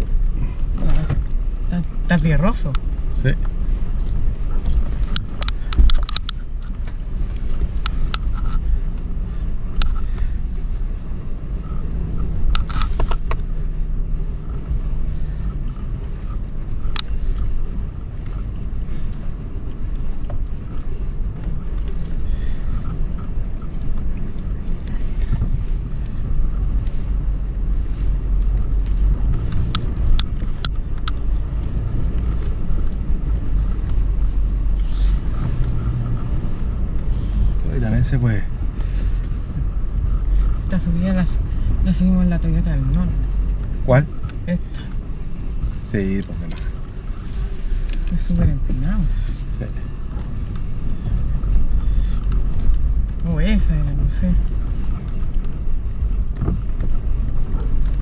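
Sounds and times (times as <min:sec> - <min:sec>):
engine low rumble: 0:00.0 - 0:58.0.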